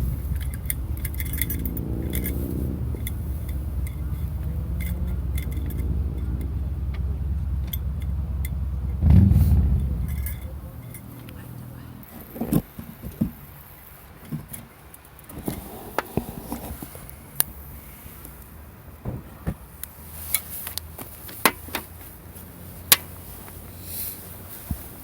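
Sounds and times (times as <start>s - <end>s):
sharp clicks and knocks: 0.0s - 11.4s
low steady background hum: 0.0s - 23.8s.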